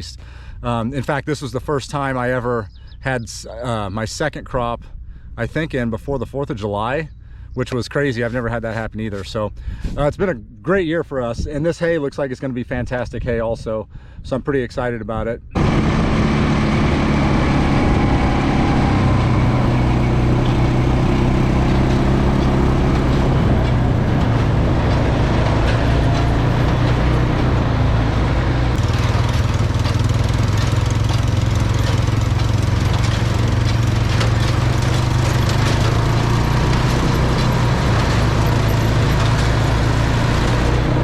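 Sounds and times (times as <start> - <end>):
engine humming: 15.4 - 41.0.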